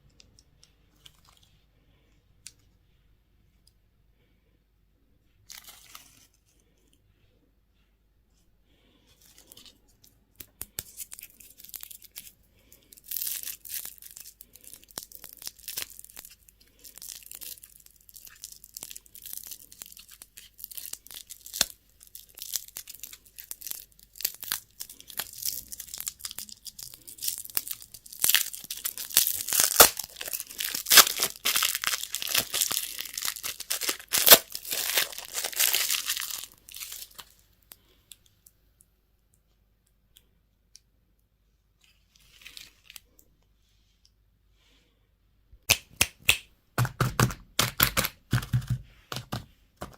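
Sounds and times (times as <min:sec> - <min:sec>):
candy packaging crackling and tearing: 0:05.5 - 0:06.5, 0:09.2 - 0:37.8, 0:46.8 - 0:49.9.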